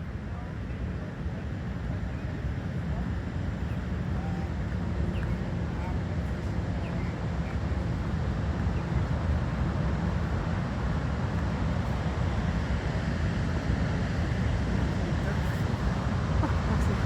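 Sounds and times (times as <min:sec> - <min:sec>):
waterfall roaring: 0:14.8 - 0:17.0.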